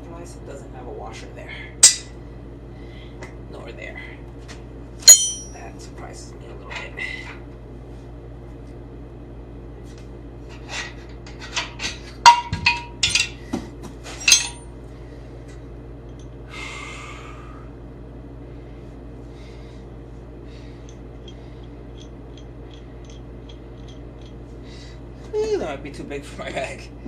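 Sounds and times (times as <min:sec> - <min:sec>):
steady low hum: 0:00.0 - 0:27.0
metal parts clinking and knocking: 0:05.1 - 0:05.6, 0:11.8 - 0:13.4, 0:14.2 - 0:14.6.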